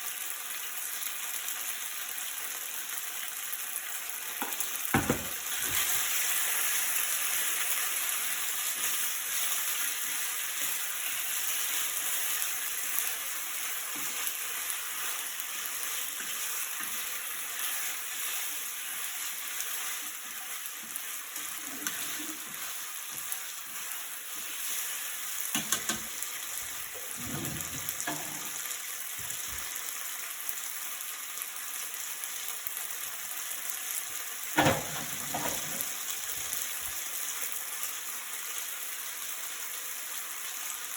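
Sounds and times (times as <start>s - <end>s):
food sizzling in a frying pan: 0.0s - 40.9s
utensil knocking against pan: 4.4s - 5.3s, 25.5s - 26.1s.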